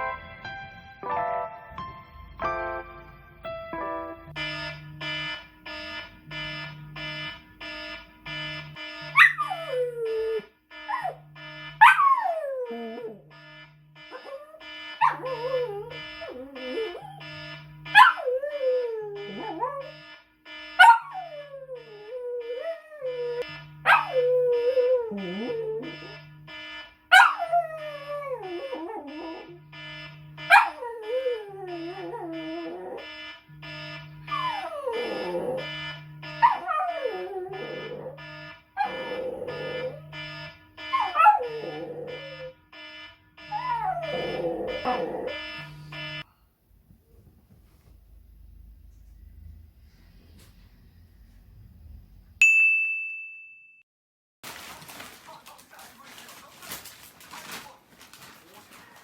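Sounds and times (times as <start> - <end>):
electronic alarm beeping: 4.3 - 46.3
dog howling: 18.0 - 19.9, 20.8 - 26.2, 27.1 - 29.6, 34.3 - 35.8, 36.4 - 38.2, 38.8 - 40.2, 40.9 - 42.6, 43.5 - 45.4.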